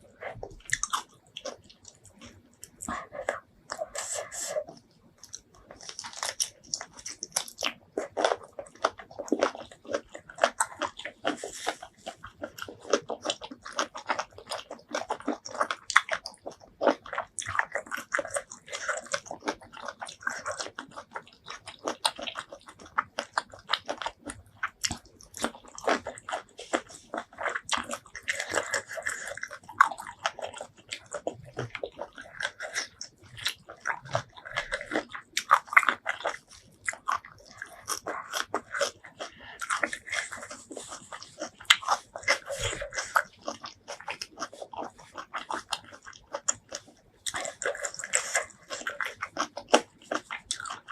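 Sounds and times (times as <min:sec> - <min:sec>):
person chewing and biting: 0:00.0 - 0:50.9.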